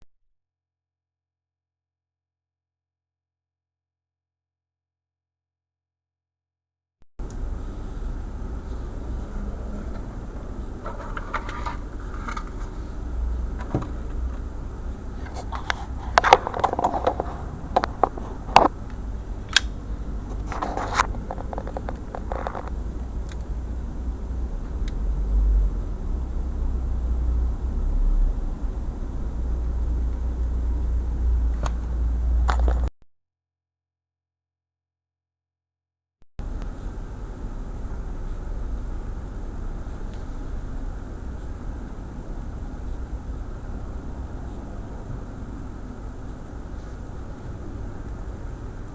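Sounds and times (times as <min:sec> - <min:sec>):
low steady rumble: 0:07.2 - 0:32.9, 0:36.4 - 0:48.9
scraping and rustling: 0:09.7 - 0:13.0, 0:15.1 - 0:18.7, 0:20.2 - 0:22.8.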